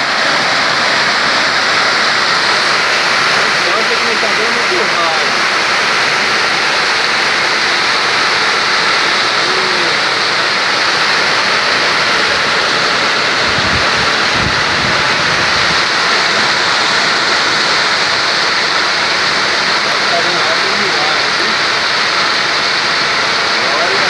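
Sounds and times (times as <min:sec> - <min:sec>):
heavy rain pouring: 0:00.0 - 0:24.0.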